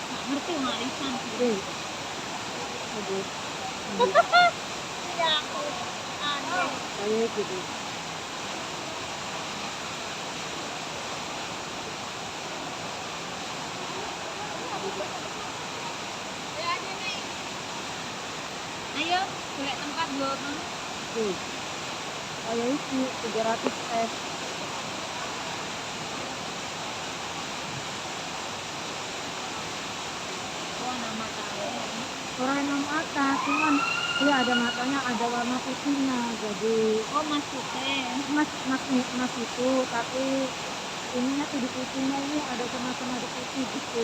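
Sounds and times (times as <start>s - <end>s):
indoor waterfall rushing: 0.0s - 44.0s.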